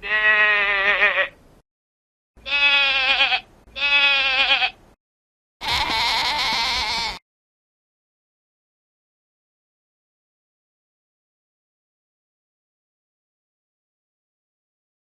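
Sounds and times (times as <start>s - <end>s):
goat bleating: 0.0s - 1.4s, 2.4s - 4.8s, 5.6s - 7.2s.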